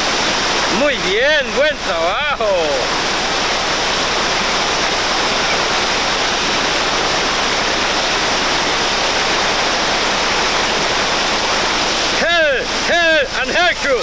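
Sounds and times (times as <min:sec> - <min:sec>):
river rapids rushing: 0:00.0 - 0:14.0.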